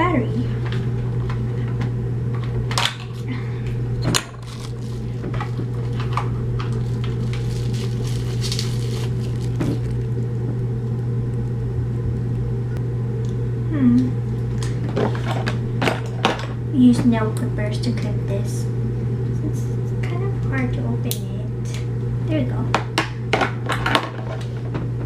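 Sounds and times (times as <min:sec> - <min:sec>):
steady low hum: 0:00.0 - 0:25.0
packaging clicks and crinkles: 0:04.1 - 0:10.5.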